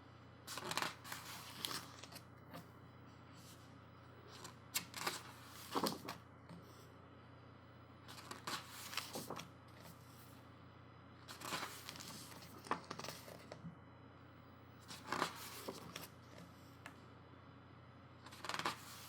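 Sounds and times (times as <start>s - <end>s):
book pages turning: 0.5s - 2.7s, 4.3s - 6.2s, 8.1s - 10.0s, 11.3s - 13.6s, 14.8s - 16.5s, 18.3s - 19.0s.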